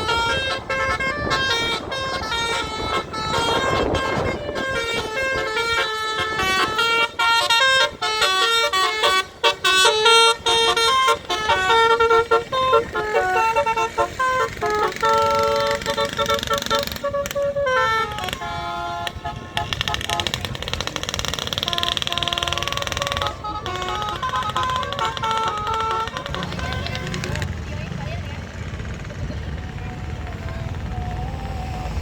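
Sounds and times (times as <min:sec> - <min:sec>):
musical bus horn melody: 0:00.0 - 0:27.6
traffic noise: 0:00.0 - 0:32.0.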